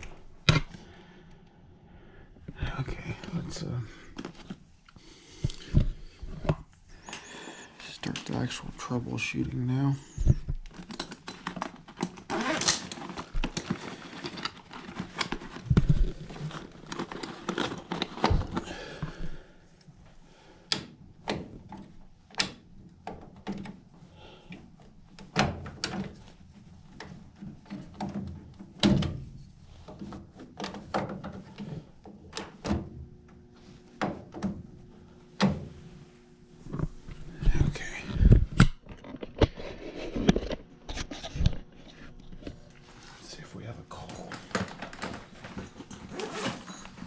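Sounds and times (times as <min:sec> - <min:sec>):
faint steady hum: 0:00.0 - 0:47.0
handling clicks and rattles: 0:10.5 - 0:18.6.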